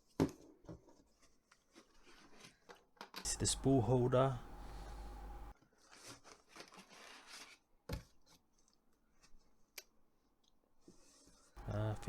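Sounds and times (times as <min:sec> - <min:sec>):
rustling and rubbing of parts: 0:00.4 - 0:03.7.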